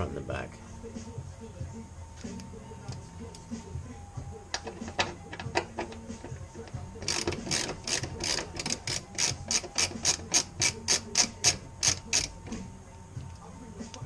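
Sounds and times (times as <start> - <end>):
ratchet wrench clicking: 4.6 - 12.6.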